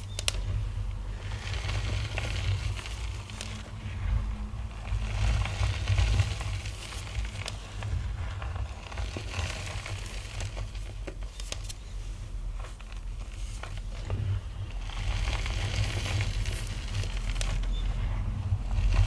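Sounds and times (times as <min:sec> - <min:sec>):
steady low rumble: 0:00.0 - 0:09.0, 0:14.3 - 0:19.0.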